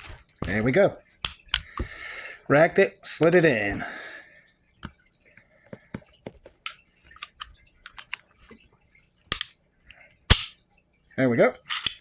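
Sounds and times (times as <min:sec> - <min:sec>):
pistol slide clicking: 0:01.2 - 0:01.6, 0:06.7 - 0:08.2, 0:09.3 - 0:09.6, 0:10.3 - 0:10.6, 0:11.7 - 0:12.0
pistol metallic clicks: 0:01.2 - 0:01.7, 0:06.7 - 0:08.2, 0:09.3 - 0:09.6, 0:10.3 - 0:10.6, 0:11.7 - 0:12.0.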